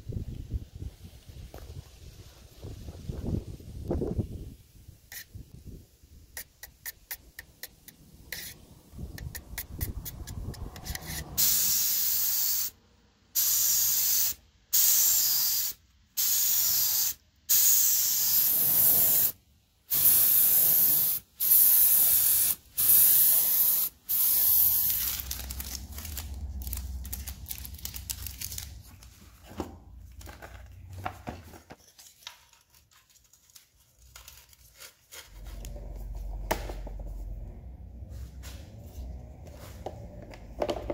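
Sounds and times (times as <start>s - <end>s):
paint spraying hiss: 9.3s - 12.8s, 13.4s - 25.6s
low hum: 35.3s - 40.9s.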